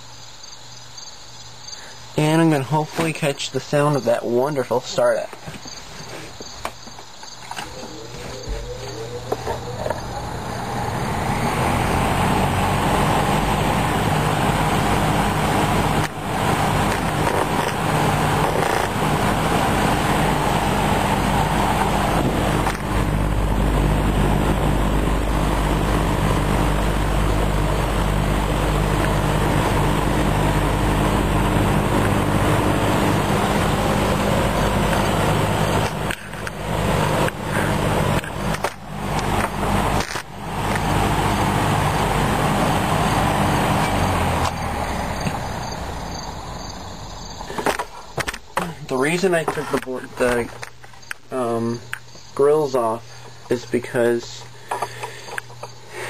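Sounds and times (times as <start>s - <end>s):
electric motor hum: 7.6s - 47.5s
box fan whooshing: 10.3s - 46.5s.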